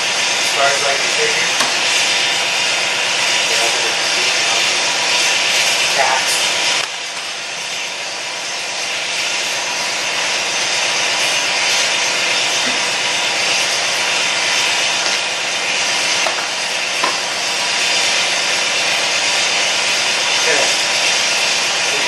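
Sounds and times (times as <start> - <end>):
compressed air hissing: 0.0 - 8.0.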